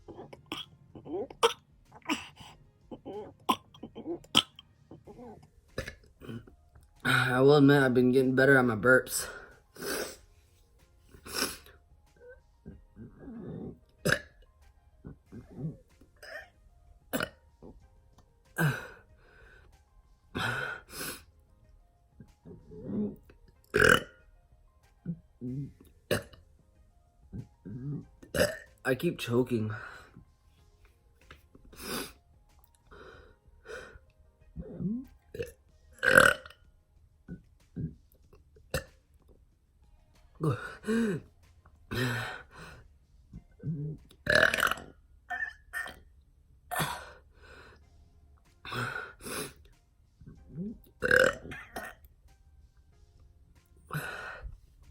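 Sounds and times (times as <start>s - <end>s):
man burping: 0.0s - 7.4s, 12.6s - 14.4s, 15.0s - 17.7s, 18.6s - 19.0s, 20.3s - 20.9s, 22.4s - 24.2s, 25.1s - 26.4s, 27.6s - 29.0s, 34.6s - 36.6s, 37.3s - 38.0s, 38.7s - 39.0s, 40.4s - 41.3s, 41.9s - 42.5s, 43.6s - 46.0s, 46.7s - 47.2s, 50.5s - 52.0s, 53.9s - 54.4s
faint background music: 0.0s - 54.9s.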